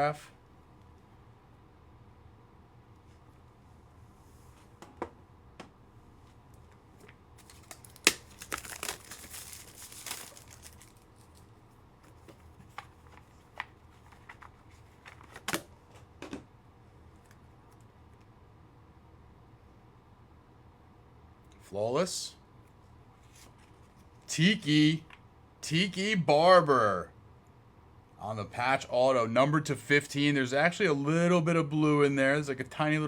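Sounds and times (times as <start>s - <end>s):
wrapper tearing and crinkling: 7.4s - 11.5s.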